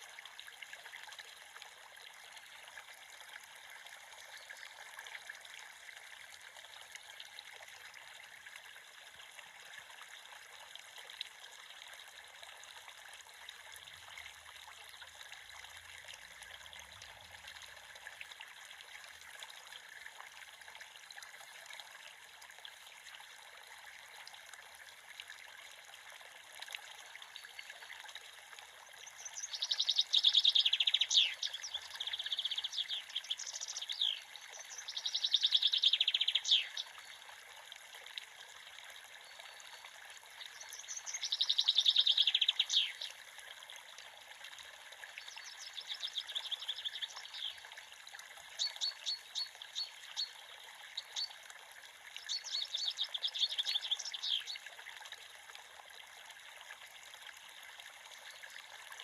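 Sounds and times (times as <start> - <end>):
creek running: 0.0 - 59.0
songbird trills and chirps: 29.1 - 37.0, 40.4 - 43.1, 45.2 - 47.6, 52.3 - 54.6.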